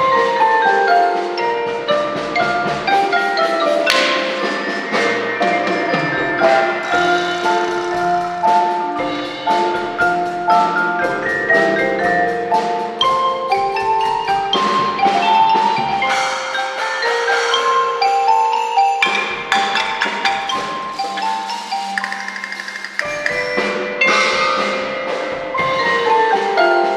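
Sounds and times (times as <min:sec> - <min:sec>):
mallet percussion tune: 0:00.0 - 0:26.9
steady beat of sharp strikes: 0:19.0 - 0:24.2.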